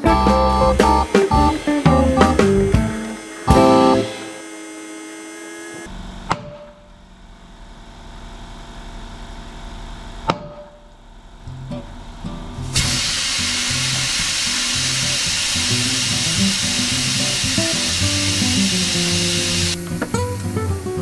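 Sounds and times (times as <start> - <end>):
guitar music: 0.0 - 4.4, 15.7 - 21.0.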